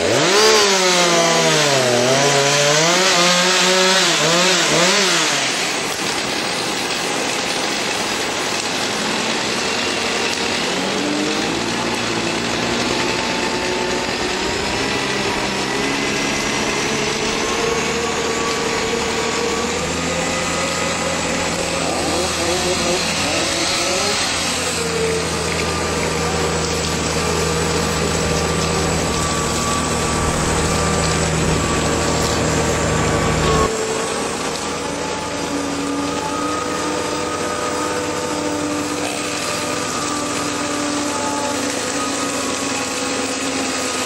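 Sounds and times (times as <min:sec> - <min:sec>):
crane engine running: 0:00.0 - 0:44.0
wavering engine whine: 0:00.0 - 0:44.0
deeper engine note: 0:09.8 - 0:44.0.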